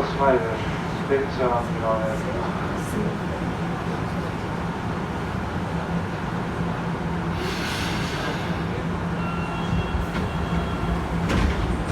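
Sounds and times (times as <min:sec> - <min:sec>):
train cabin rumble: 0:07.3 - 0:11.9.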